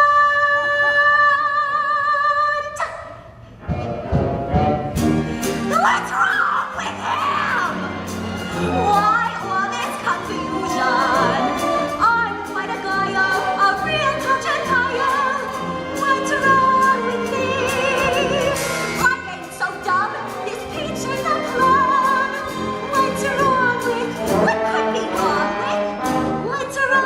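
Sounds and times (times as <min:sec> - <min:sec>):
orchestral accompaniment: 0:03.6 - 0:27.0
operatic singing: 0:05.5 - 0:27.0.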